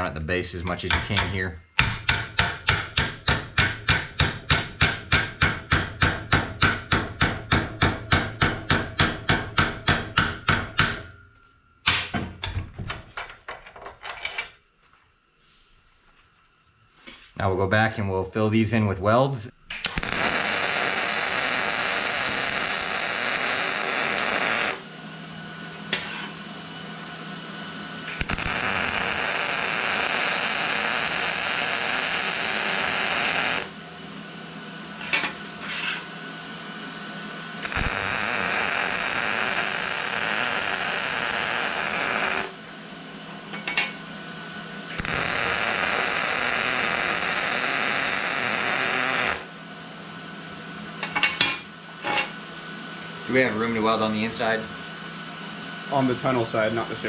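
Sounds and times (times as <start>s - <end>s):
arc welder buzzing crackle: 19.5s - 36.0s, 36.6s - 52.3s.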